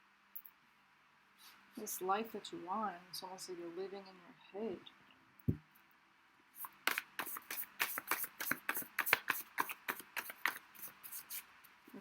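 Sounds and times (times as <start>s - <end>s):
cards slapping while shuffled: 6.6s - 11.4s.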